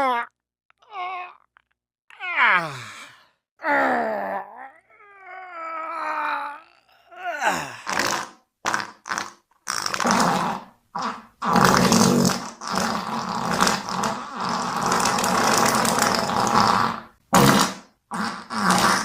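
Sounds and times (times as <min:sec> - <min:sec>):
cartoon fart sound effect: 0:07.9 - 0:19.0.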